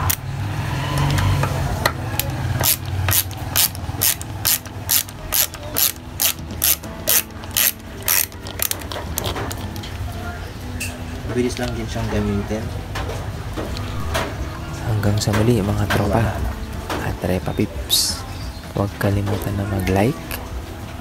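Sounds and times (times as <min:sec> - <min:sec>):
ratchet screwdriver clicking: 0:02.6 - 0:08.8.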